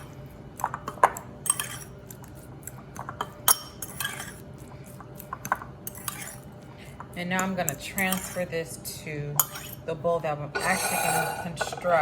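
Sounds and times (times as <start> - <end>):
utensil clinking against bowl: 0.6 - 2.2, 5.1 - 8.5.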